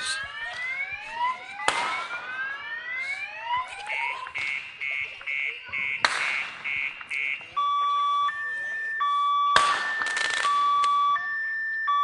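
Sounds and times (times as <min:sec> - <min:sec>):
electronic siren whooping: 0:00.0 - 0:06.0, 0:06.6 - 0:12.0
sharp cracks: 0:01.6 - 0:02.4, 0:06.0 - 0:07.3, 0:09.6 - 0:11.0
rapid pulsed beeping: 0:02.1 - 0:12.0.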